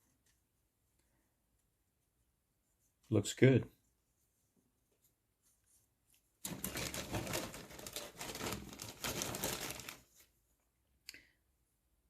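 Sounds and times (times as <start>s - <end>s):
plastic parts crinkling and clattering: 6.4s - 10.3s.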